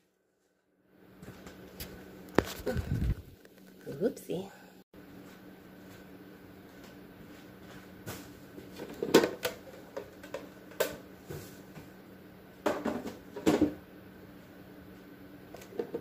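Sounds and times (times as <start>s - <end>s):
containers knocking on fridge shelves: 12.6s - 13.8s.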